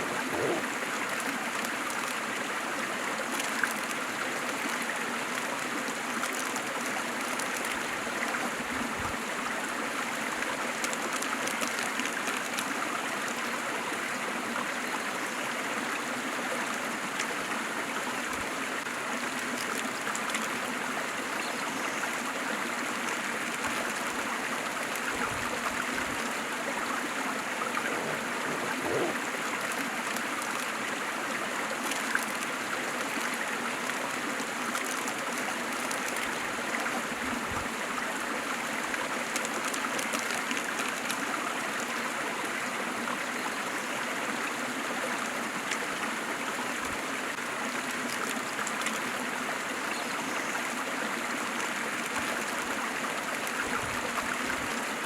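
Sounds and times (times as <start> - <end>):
waterfall pouring and splashing: 15.6 - 43.5, 44.1 - 55.0.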